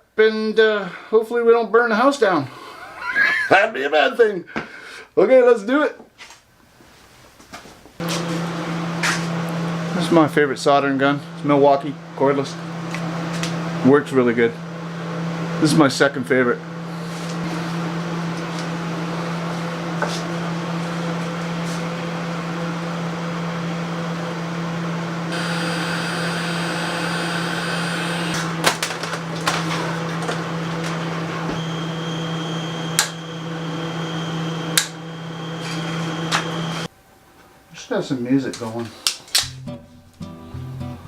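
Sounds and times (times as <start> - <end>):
high-pitched whine: 25.3 - 28.5, 31.3 - 36.9.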